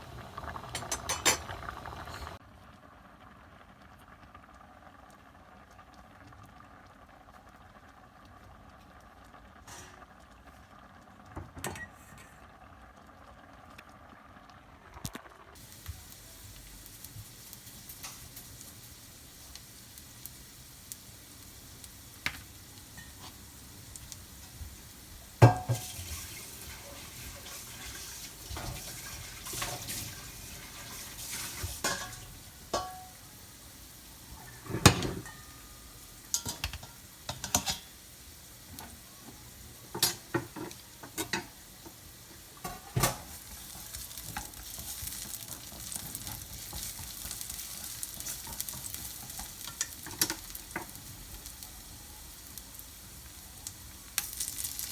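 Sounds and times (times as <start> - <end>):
food sizzling in frying pan: 0.0 - 2.4, 14.2 - 54.9.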